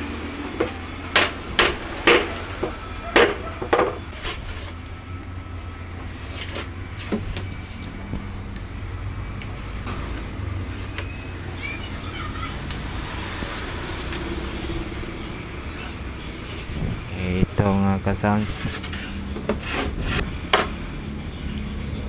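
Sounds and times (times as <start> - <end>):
knocks on wooden panels: 0.6 - 4.0.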